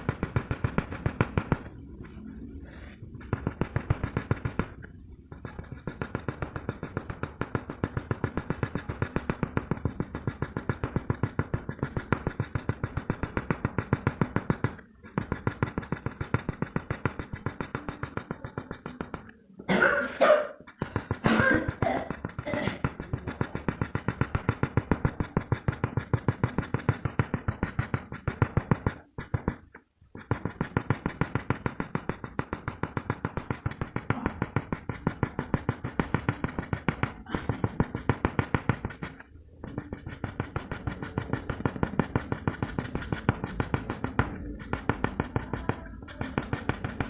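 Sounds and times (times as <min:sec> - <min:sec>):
music with fast beat: 0:30.4 - 0:47.0.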